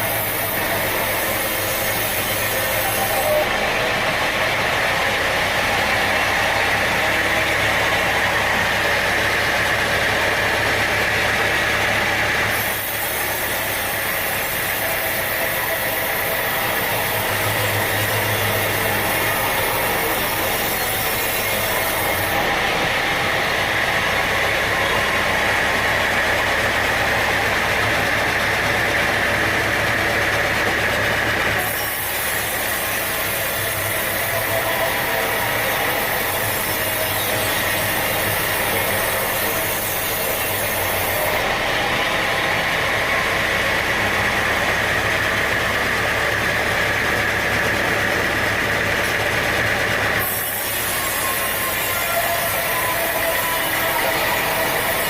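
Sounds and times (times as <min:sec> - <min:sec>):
whirring hiss of saw: 0:00.0 - 0:03.6, 0:11.8 - 0:26.2, 0:31.6 - 0:43.1, 0:50.1 - 0:55.0
machinery hum: 0:00.0 - 0:55.0.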